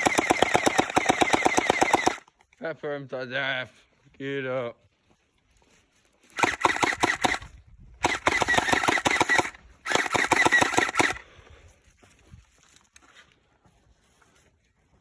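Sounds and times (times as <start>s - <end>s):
gel blaster firing bursts: 0.0s - 2.2s, 6.4s - 11.2s
motor whirring: 0.0s - 2.2s, 6.4s - 11.2s.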